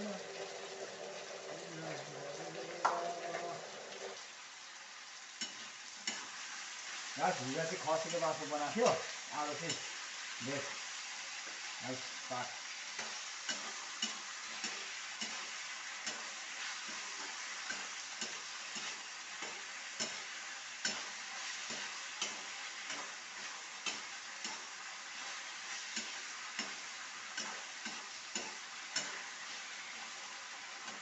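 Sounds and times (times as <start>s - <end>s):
vegetables sizzling in a pan: 0.0s - 31.0s
spoon clicking against pan: 13.0s - 23.2s, 23.8s - 24.7s, 25.9s - 29.3s.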